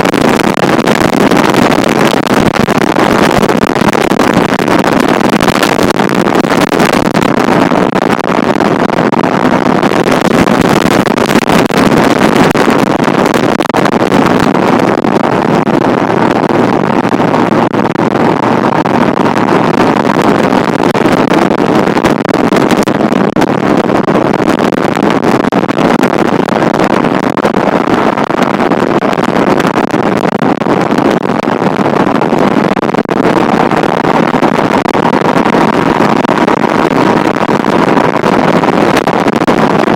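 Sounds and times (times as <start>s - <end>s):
wind on microphone: 0.0s - 39.9s.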